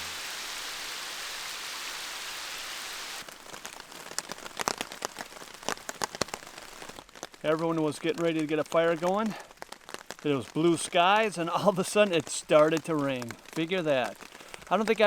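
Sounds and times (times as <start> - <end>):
rain hissing: 0.0 - 15.0
raindrops ticking on a surface: 3.2 - 15.0.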